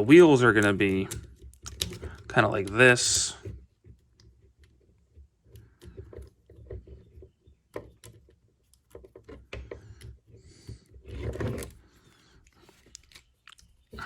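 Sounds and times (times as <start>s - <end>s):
plastic toy parts clicking: 0.4s - 3.2s.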